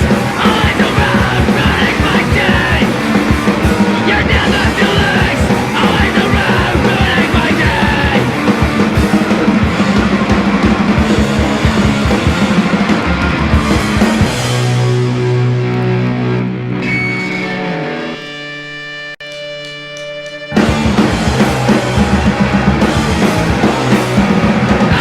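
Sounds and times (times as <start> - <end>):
person singing: 0.0 - 3.0, 3.8 - 8.5, 21.4 - 25.0
punk band playing: 0.0 - 25.0.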